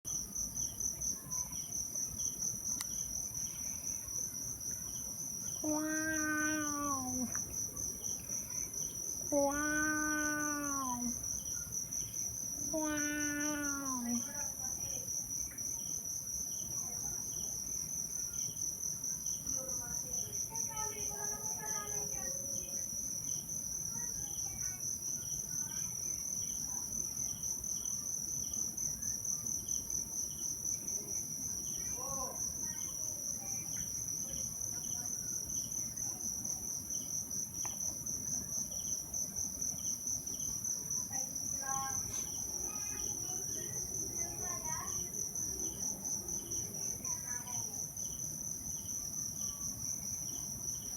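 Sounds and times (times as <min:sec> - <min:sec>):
crickets trilling: 0:00.1 - 0:50.9.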